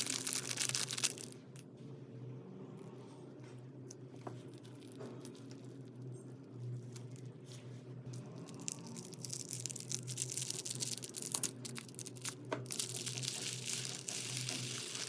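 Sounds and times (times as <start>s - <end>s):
slime clicking and crackling: 0.0s - 1.3s, 8.4s - 15.0s.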